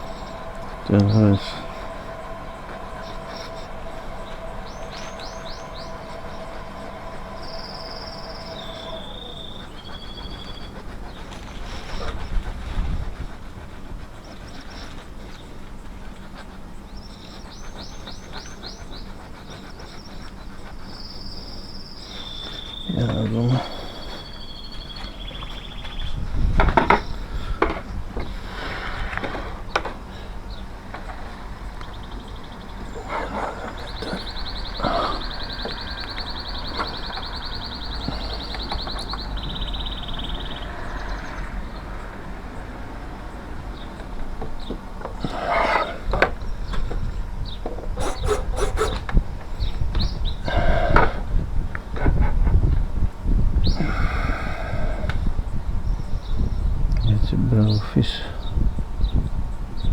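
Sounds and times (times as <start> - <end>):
faint steady tone: 0.0 - 12.4
crickets trilling: 0.0 - 51.9, 53.6 - 58.5
small birds singing: 0.0 - 59.9
steady rumbling noise: 0.0 - 59.9.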